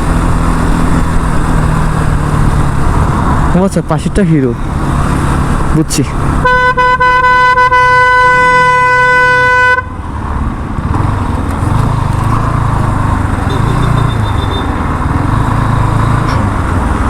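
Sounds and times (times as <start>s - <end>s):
motorcycle engine: 0.0s - 17.0s
vehicle horn: 6.4s - 10.0s, 13.4s - 14.8s.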